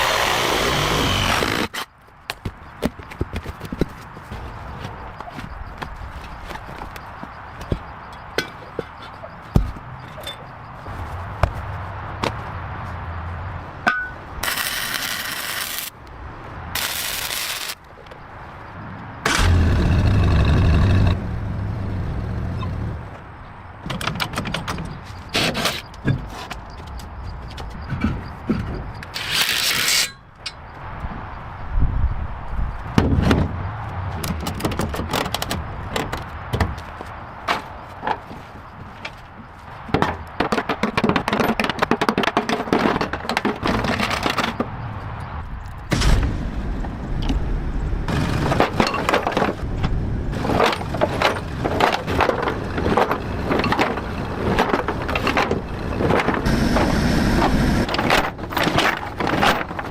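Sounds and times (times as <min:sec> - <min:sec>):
knocking and scraping on car body: 0:39.8 - 0:44.8.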